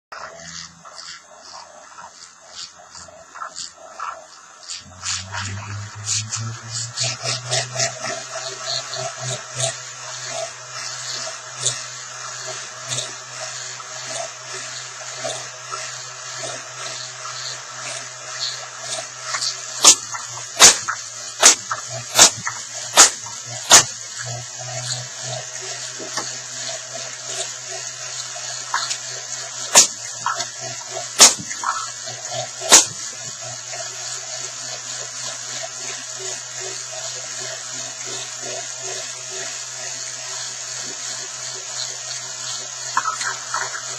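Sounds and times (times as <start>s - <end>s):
ball machine wheels whirring: 0.1s - 43.9s
balls fired with sharp cracks: 19.8s - 23.9s, 29.7s - 30.4s, 31.2s - 31.7s, 32.6s - 33.0s.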